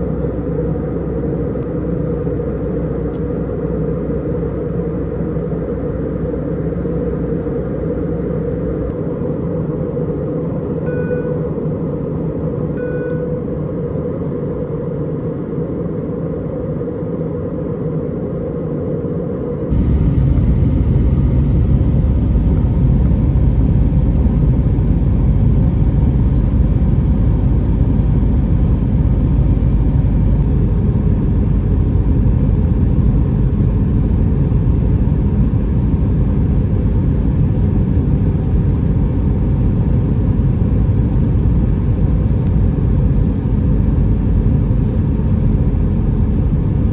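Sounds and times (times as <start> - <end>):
airplane cabin engine rumble: 0.0 - 46.9.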